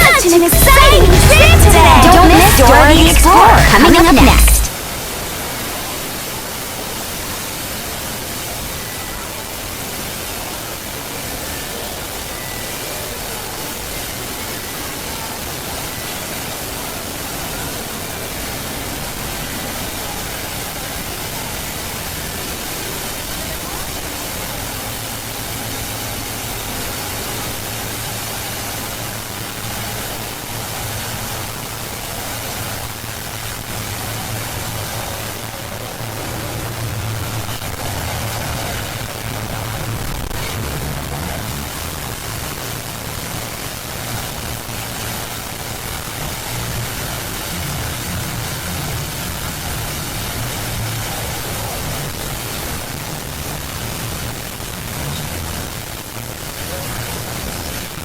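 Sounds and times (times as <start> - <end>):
steady hiss: 0.0 - 58.0
low hum: 46.1 - 52.2.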